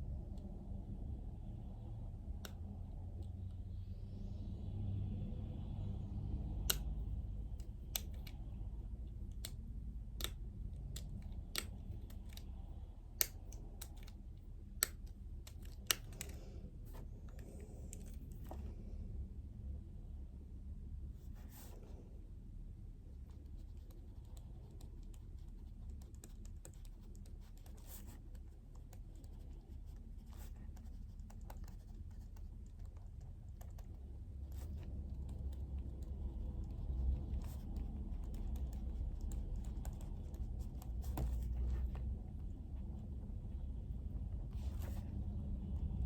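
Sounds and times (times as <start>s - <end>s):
low room hum: 0.0s - 46.0s.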